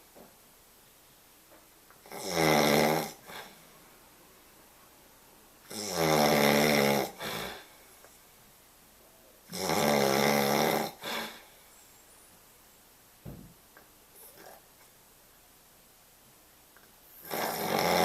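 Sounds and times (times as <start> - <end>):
man snoring: 2.1 - 3.6, 5.7 - 7.6, 9.5 - 11.4, 17.2 - 18.0.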